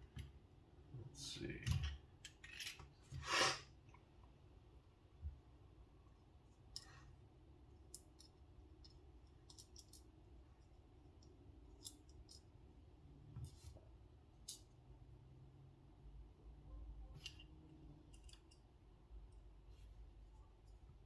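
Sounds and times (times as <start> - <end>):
knife parts clicking and tapping: 7.9 - 10.1, 11.2 - 12.4, 18.1 - 18.6.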